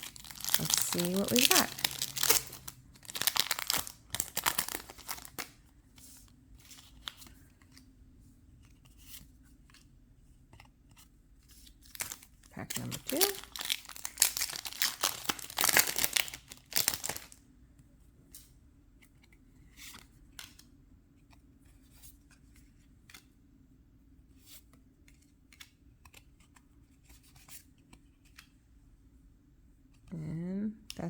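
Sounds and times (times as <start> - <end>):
foil wrapper tearing and crinkling: 0.0 - 5.5, 11.9 - 17.4
trading cards being flipped: 0.0 - 7.8.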